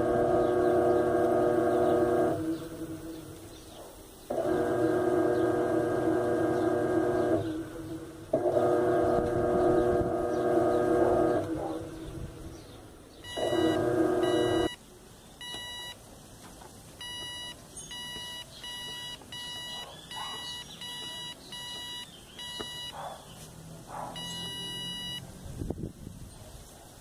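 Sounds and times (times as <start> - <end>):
low held electronic tone: 13.2 - 14.8, 17.0 - 23.0, 24.2 - 25.2
short electronic beeps: 13.2 - 14.8, 15.4 - 16.0, 17.0 - 23.0, 24.2 - 25.2.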